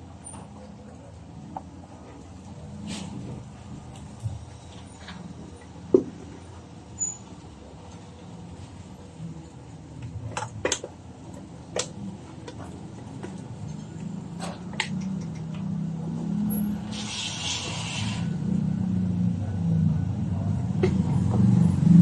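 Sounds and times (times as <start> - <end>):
sharp clicks and light knocks: 10.0 - 15.7.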